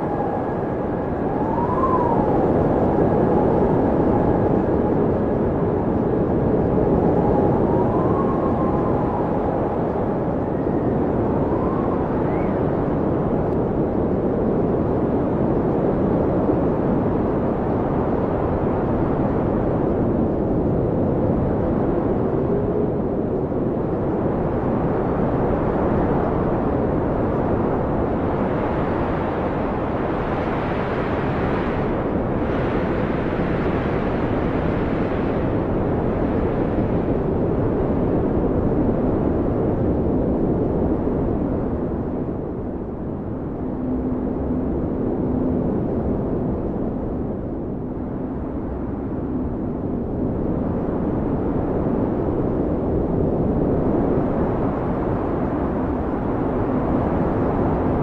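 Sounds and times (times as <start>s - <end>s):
blizzard wind rushing: 0.0s - 58.0s
howling wind whistles: 0.0s - 58.0s.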